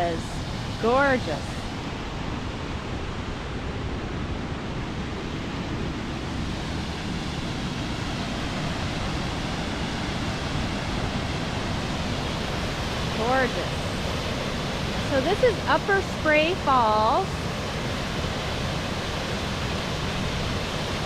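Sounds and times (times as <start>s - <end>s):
waterfall roaring: 0.0s - 21.0s.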